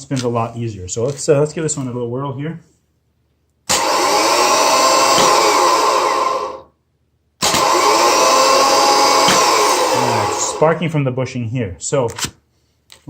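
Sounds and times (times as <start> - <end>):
starter motor whining: 3.7 - 6.7, 7.4 - 10.8.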